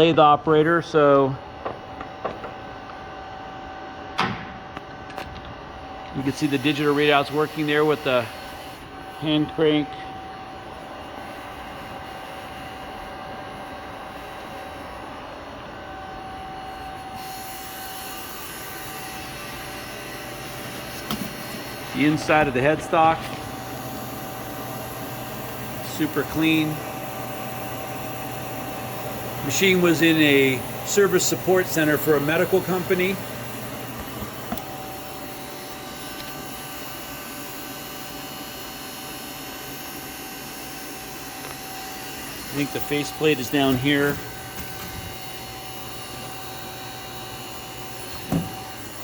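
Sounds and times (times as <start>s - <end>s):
lathe machine hum: 5.6s - 49.0s
faint whining tones: 40.5s - 49.0s.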